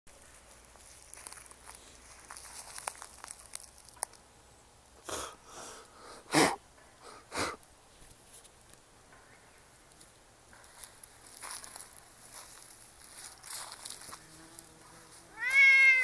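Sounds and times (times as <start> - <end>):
person sniffing: 5.0 - 7.6.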